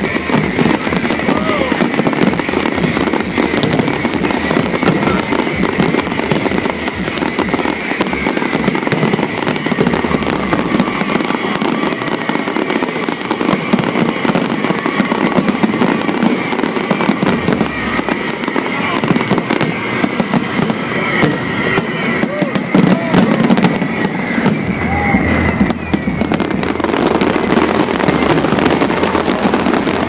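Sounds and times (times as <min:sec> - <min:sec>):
fireworks bangs and crackles: 0:00.0 - 0:30.0
high whistling tone: 0:03.8 - 0:30.0.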